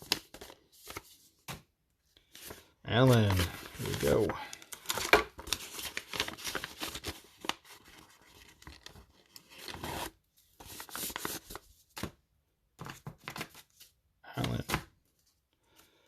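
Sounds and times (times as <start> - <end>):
paper wrappers rustling: 2.3 - 11.6.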